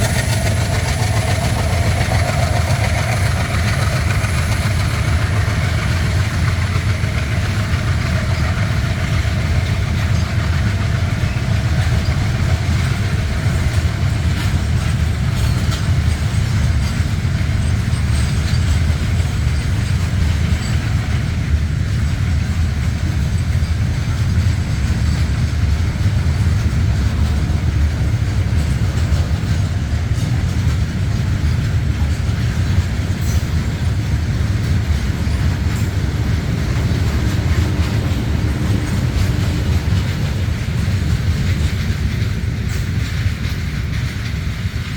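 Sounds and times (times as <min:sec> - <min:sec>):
train rumbling past: 0:00.0 - 0:44.9.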